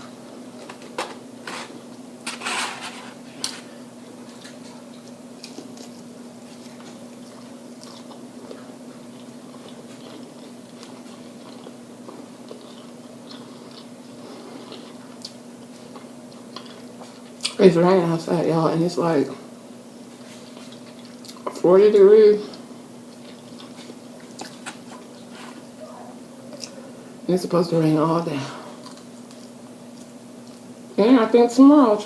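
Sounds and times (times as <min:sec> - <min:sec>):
steady low hum: 0:00.0 - 0:32.0
chewing: 0:04.2 - 0:17.6, 0:20.2 - 0:21.6, 0:22.4 - 0:25.8, 0:26.5 - 0:26.8, 0:28.7 - 0:30.7.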